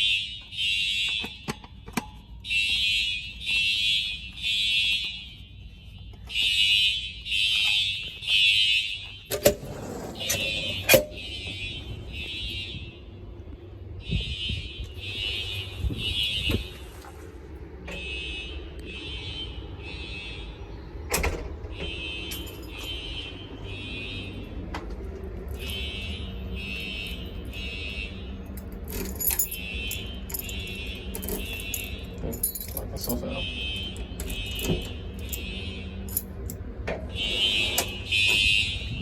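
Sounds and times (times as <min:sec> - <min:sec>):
fire alarm horn blasts: 0:00.0 - 0:13.3, 0:13.9 - 0:17.0, 0:17.8 - 0:20.7, 0:21.7 - 0:24.6, 0:25.5 - 0:36.2, 0:37.1 - 0:39.0.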